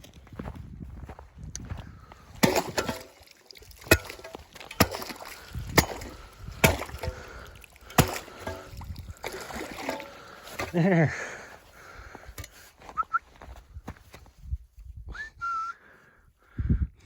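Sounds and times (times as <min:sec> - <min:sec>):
hand tool striking ice: 0:02.4 - 0:10.8.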